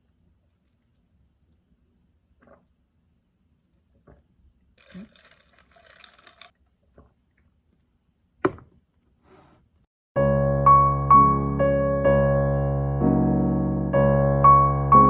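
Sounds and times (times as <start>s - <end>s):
rustling: 4.8s - 7.9s.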